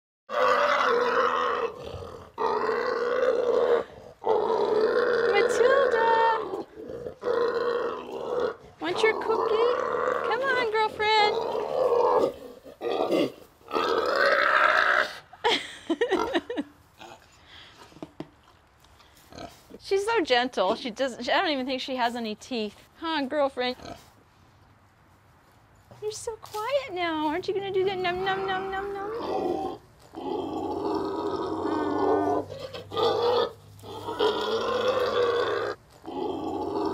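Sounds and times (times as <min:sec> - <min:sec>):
pig grunting: 0:00.3 - 0:15.2, 0:28.9 - 0:36.9.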